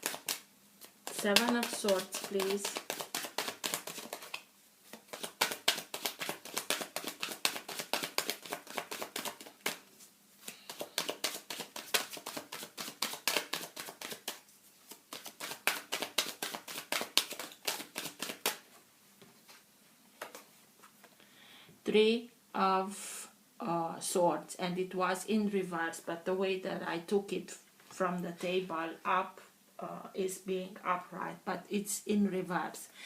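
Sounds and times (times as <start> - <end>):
cards being shuffled by hand: 0.0 - 18.6, 20.2 - 21.1.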